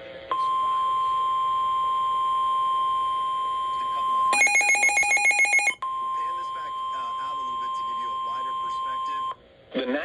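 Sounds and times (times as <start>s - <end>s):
steady alarm tone: 4.2s - 5.8s.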